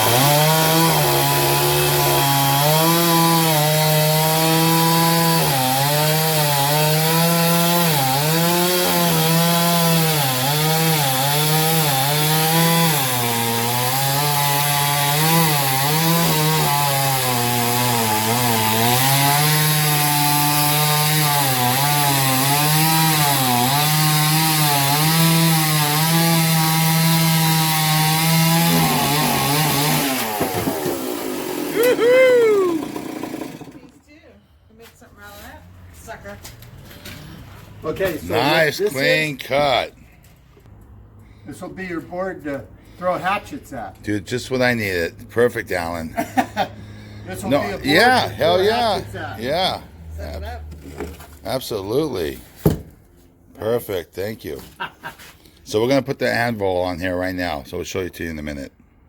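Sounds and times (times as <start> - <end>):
chainsaw cutting log: 0.0 - 34.0, 38.2 - 39.9, 47.3 - 53.0.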